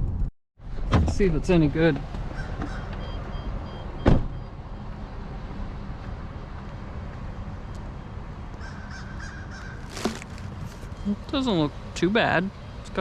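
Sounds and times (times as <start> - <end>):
loud thump: 4.0 - 4.4.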